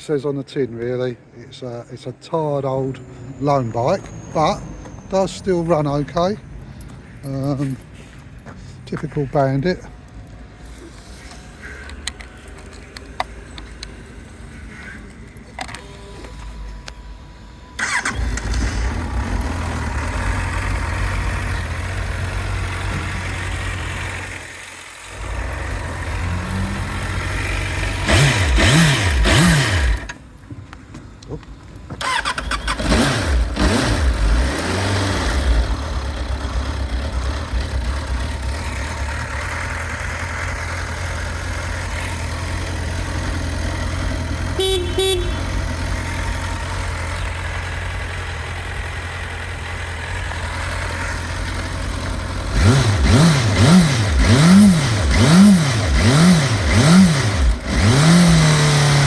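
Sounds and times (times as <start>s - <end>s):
motorcycle engine idling and revving: 2.6s - 15.9s, 17.8s - 30.5s, 31.5s - 59.0s
short horn beep: 44.6s - 45.6s.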